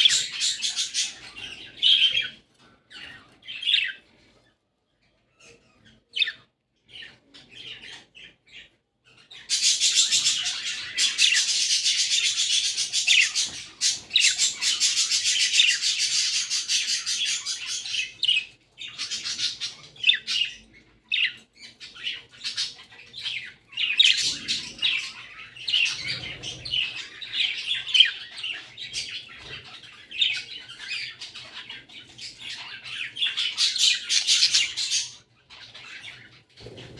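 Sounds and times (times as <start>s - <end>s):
budgerigars chattering and warbling: 0.0s - 4.4s, 5.4s - 36.9s.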